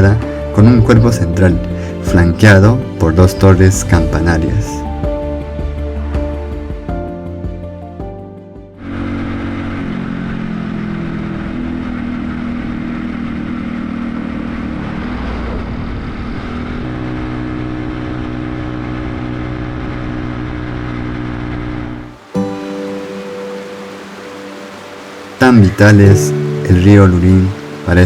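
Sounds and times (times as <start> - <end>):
vehicle engine running: 5.1 - 28.0
steady noisy rush: 12.0 - 28.0.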